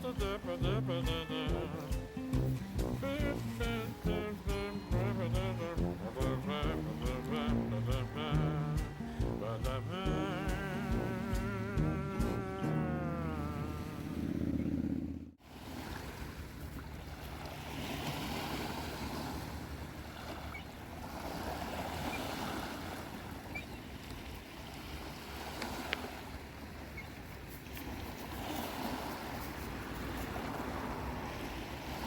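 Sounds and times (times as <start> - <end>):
music track: 0.0 - 13.9
ocean surf washing ashore: 0.0 - 14.8, 15.4 - 32.0.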